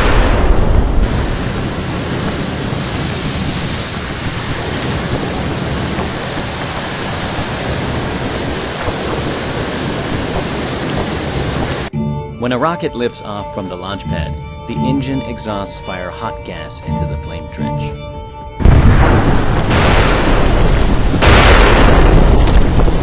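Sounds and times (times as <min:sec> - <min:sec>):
rocket launch roar: 0:00.0 - 0:11.9, 0:18.6 - 0:23.0.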